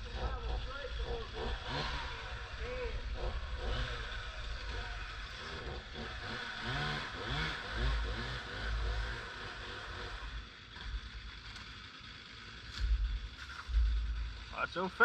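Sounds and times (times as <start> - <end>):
chainsaw engine revving: 0.0 - 14.6.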